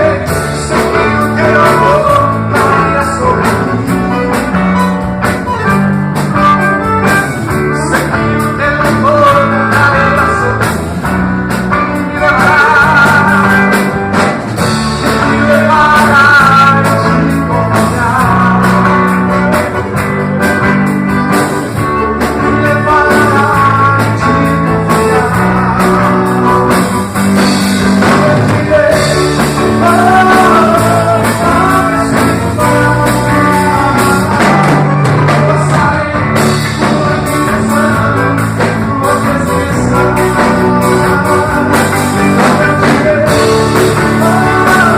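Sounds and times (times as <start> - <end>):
held bass notes: 0.0 - 44.9.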